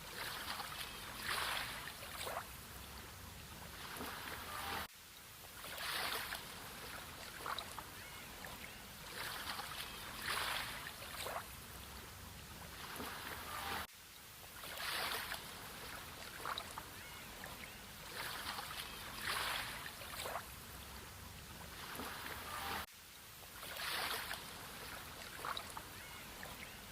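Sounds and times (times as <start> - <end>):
gentle sea waves washing: 0.0 - 26.9
water splashes and trickles: 0.0 - 26.9.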